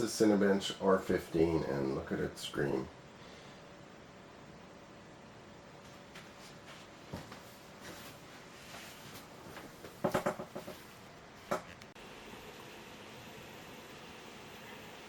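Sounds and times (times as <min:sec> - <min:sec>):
faint clicks and knocks: 0:09.6 - 0:12.0.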